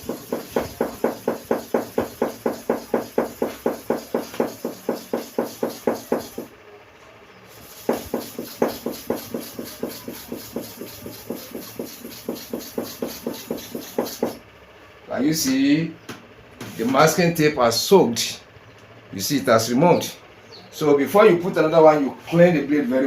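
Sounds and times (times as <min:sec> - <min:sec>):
blade rubbed on sharpening stone: 0:07.6 - 0:14.4.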